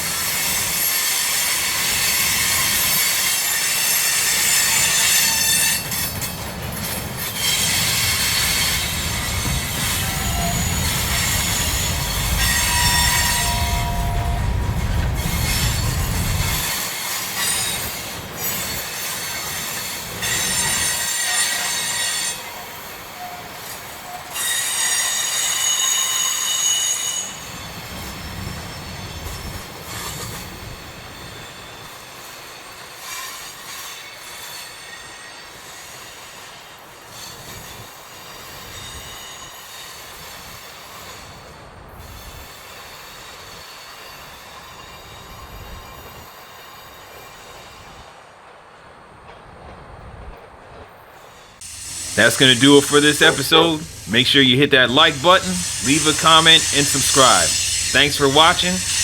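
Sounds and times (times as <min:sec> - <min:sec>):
low rumble of train: 0:00.0 - 0:59.0
train wheels squealing on rails: 0:00.0 - 0:59.0.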